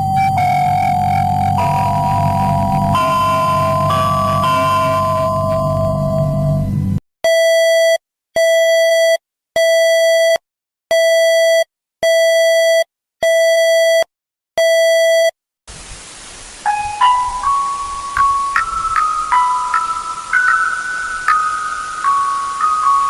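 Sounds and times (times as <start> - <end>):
electronic alert tone beeping: 0.0 - 6.6
chiming melody of rising notes: 0.0 - 6.8, 16.7 - 23.0
faint hiss: 15.7 - 23.0.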